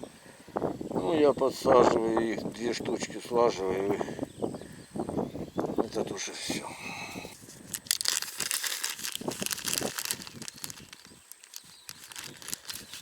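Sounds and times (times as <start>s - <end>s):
plastic packaging crinkling: 7.4s - 13.0s.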